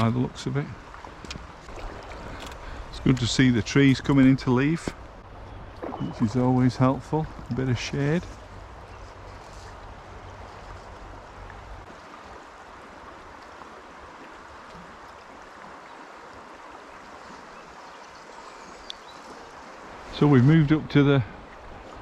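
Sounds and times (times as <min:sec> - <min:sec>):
river water rushing: 0:09.7 - 0:22.0.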